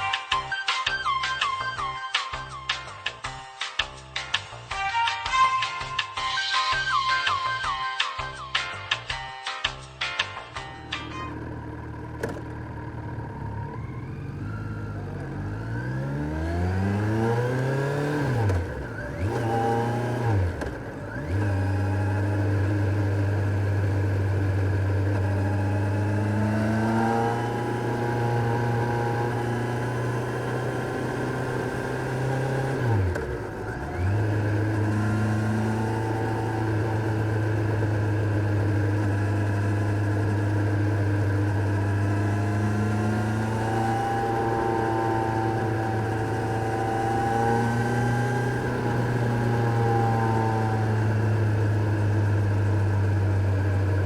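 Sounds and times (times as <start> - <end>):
motorcycle engine revving: 10.8 - 54.0.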